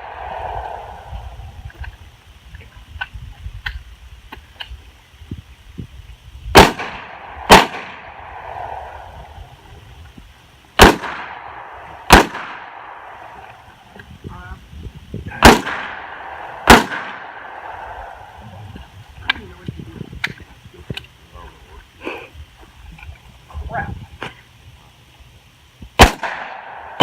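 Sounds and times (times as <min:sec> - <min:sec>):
revolver gunshots with echo: 0:06.6 - 0:09.0, 0:10.8 - 0:13.2, 0:15.4 - 0:18.3, 0:26.0 - 0:27.0.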